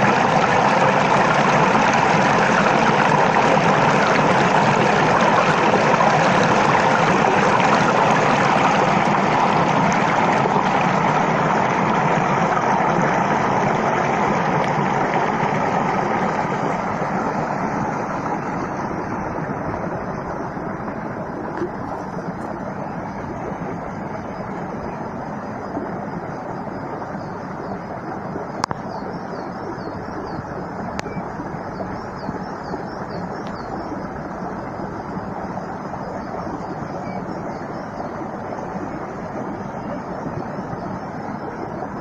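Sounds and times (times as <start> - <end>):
rushing water: 0.0 - 42.0
faint bird chirps: 28.6 - 39.0.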